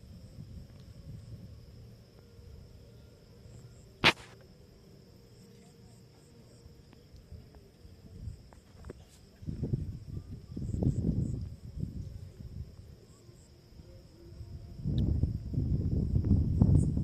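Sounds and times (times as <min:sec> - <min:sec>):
high-pitched insect drone: 0:00.0 - 0:17.0
sharp crack: 0:04.0 - 0:04.4.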